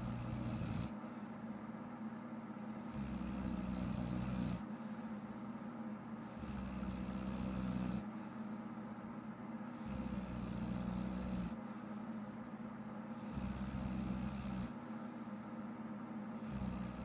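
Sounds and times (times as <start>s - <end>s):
woman snoring: 0.0s - 1.0s, 2.8s - 4.7s, 6.2s - 8.1s, 9.7s - 11.6s, 13.2s - 14.8s, 16.4s - 17.0s.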